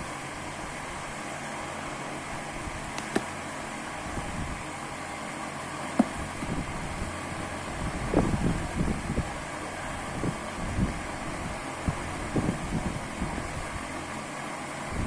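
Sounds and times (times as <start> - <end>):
background hum and hiss: 0.0 - 15.0
phone box packaging handled: 3.0 - 3.3.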